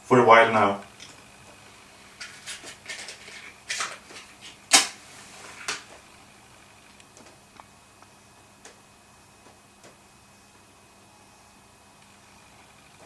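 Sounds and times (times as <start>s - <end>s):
small objects clicking and knocking: 2.2s - 5.0s.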